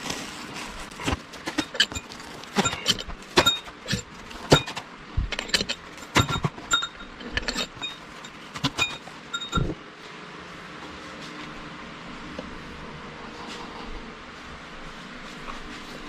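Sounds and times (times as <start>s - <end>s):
metal tools clanking: 0.9s - 9.8s.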